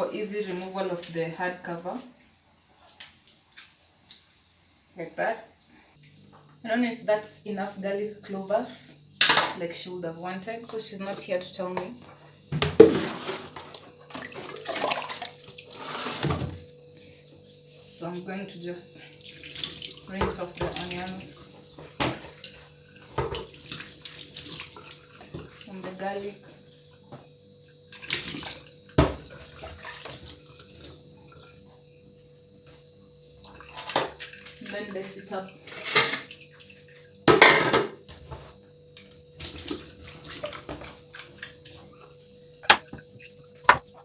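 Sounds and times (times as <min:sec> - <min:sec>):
water pouring and splashing: 0:12.8 - 0:16.3, 0:19.2 - 0:21.3, 0:22.1 - 0:25.7, 0:27.9 - 0:31.0, 0:39.3 - 0:41.7.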